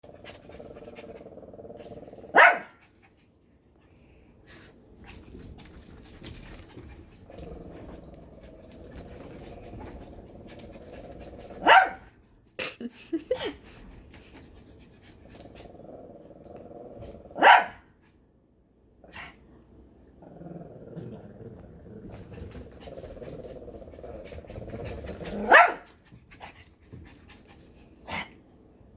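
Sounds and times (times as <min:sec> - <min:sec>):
puppy barking: 0:02.4 - 0:02.8, 0:11.6 - 0:12.0, 0:17.4 - 0:17.8, 0:25.4 - 0:25.8.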